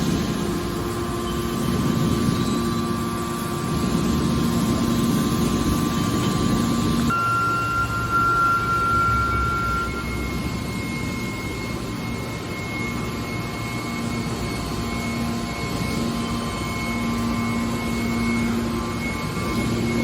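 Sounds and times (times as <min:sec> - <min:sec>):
baler machinery running: 0:00.0 - 0:20.0
thin high whine: 0:00.0 - 0:20.0
low hum: 0:06.6 - 0:20.0.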